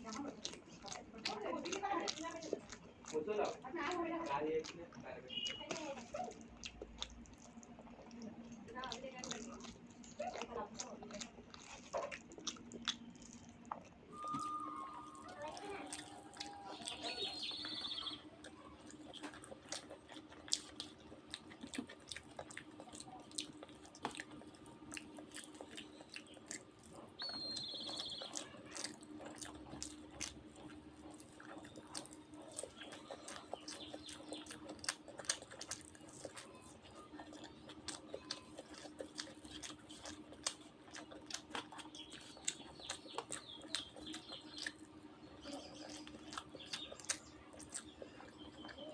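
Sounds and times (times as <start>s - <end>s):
person chewing food: 0.0s - 48.9s
bird chirping: 5.3s - 5.7s, 14.1s - 18.3s, 27.2s - 28.5s, 32.4s - 34.8s, 41.8s - 48.9s.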